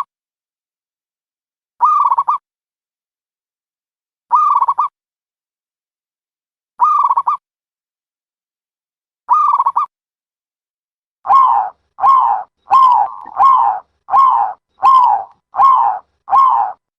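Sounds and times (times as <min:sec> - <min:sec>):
dove cooing: 0:11.3 - 0:16.8.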